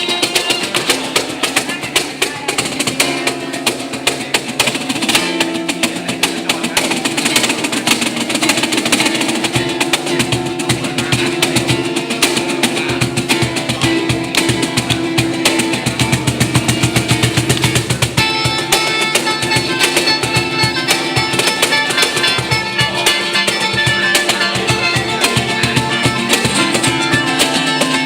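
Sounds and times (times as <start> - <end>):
percussion: 0.0 - 28.0
plucked strings: 0.0 - 28.0.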